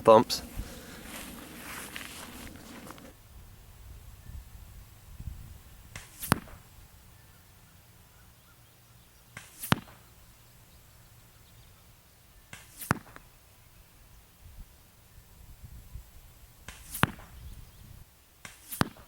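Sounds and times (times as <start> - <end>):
air rifle shots: 5.9 - 6.6, 9.4 - 10.1, 12.5 - 13.3, 16.7 - 17.4.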